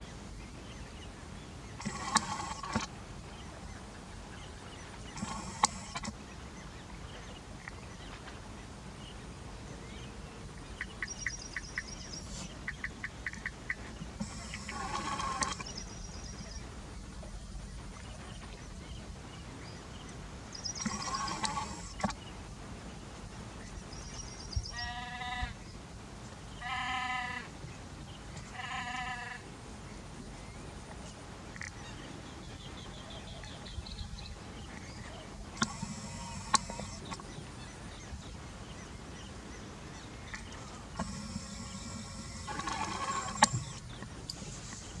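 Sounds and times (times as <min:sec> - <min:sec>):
bleating animal calls: 0:24.8 - 0:25.6, 0:26.6 - 0:27.5, 0:28.5 - 0:29.4.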